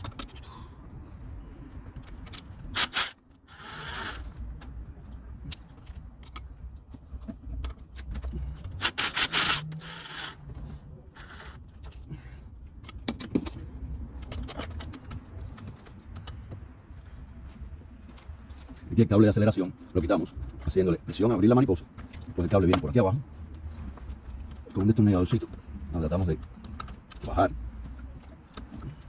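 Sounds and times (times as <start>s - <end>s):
metal tools and bolts clinking: 2.0s - 12.2s.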